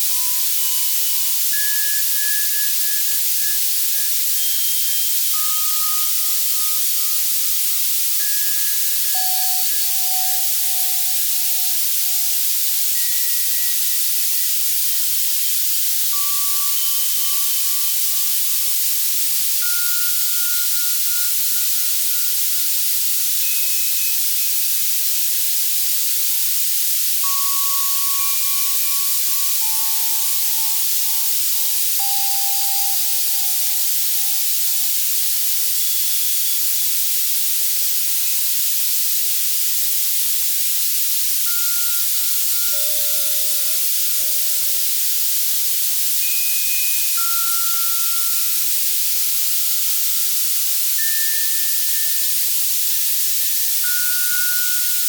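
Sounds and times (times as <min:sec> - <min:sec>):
soft synthesized bell tones: 0:08.3 - 0:14.8, 0:27.2 - 0:35.1, 0:41.5 - 0:49.1.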